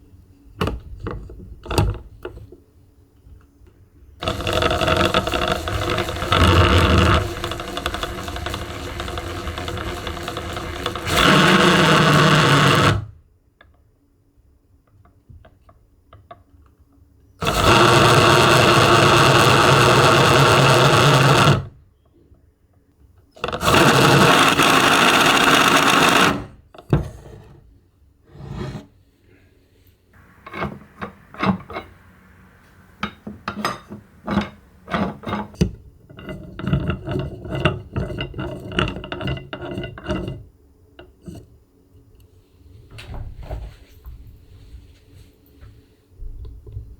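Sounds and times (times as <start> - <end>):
gear whine: 4.2 - 13.1, 17.4 - 21.6, 30.2 - 35.6.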